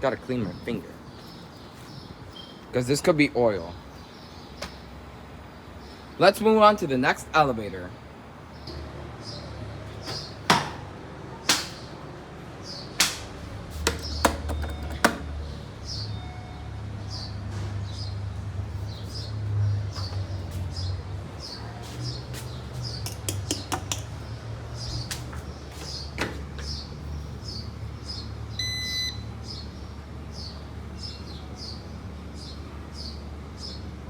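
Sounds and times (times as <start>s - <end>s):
small bird chirping: 0.5s - 2.7s
sharp clicks and knocks: 13.0s - 15.3s, 23.0s - 24.1s.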